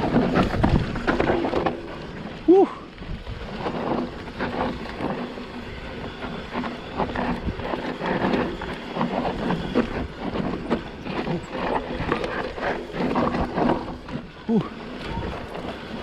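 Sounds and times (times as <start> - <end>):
bike clattering over rocks: 0.0 - 5.4, 9.3 - 16.0.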